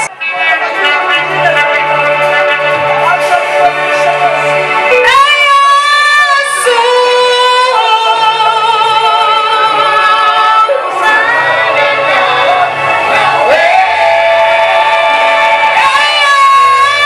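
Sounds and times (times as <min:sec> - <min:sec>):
low accompaniment: 0:00.0 - 0:07.9
woman singing with vibrato: 0:04.5 - 0:17.0.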